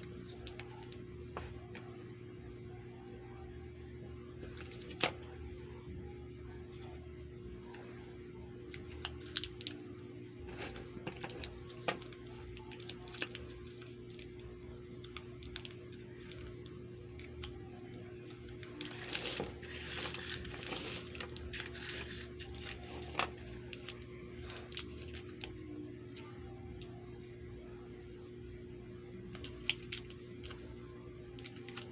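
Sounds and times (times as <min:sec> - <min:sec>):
faint steady hum: 0:00.0 - 0:31.9
candy wrappers crinkling: 0:08.7 - 0:26.2, 0:29.3 - 0:30.7, 0:31.4 - 0:31.9.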